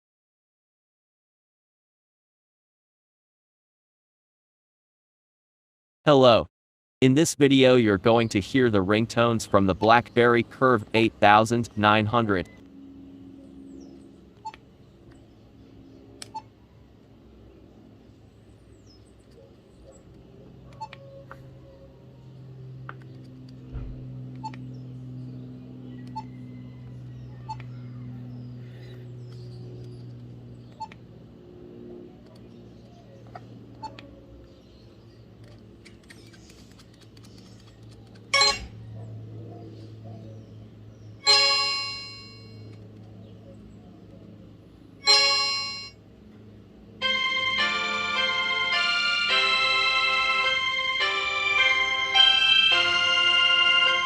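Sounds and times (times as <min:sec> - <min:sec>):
low steady hum: 0:07.0 - 0:54.0
short beeps: 0:38.4 - 0:38.8, 0:41.2 - 0:42.5, 0:45.0 - 0:46.0
bright electronic phone chime: 0:41.2 - 0:42.6, 0:45.0 - 0:46.0.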